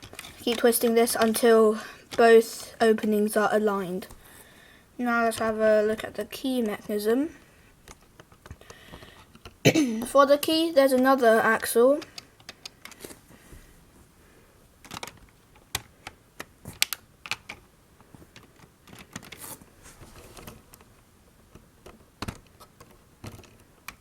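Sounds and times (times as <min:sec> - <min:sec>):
plastic bricks clicking: 0:12.0 - 0:13.1, 0:14.8 - 0:17.6, 0:18.4 - 0:19.6, 0:21.5 - 0:24.0.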